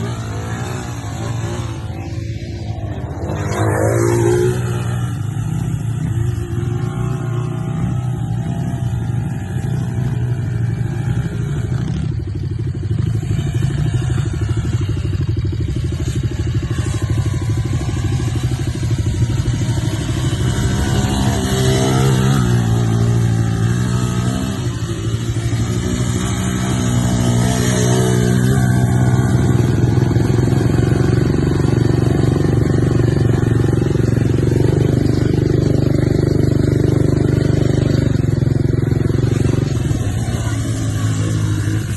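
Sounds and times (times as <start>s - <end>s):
quad engine running under load: 0.0s - 41.9s.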